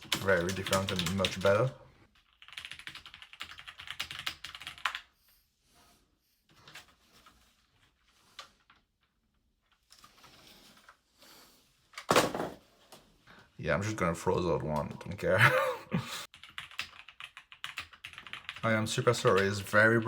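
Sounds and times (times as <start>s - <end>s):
mechanical keyboard typing: 0.0s - 5.1s, 16.3s - 19.7s.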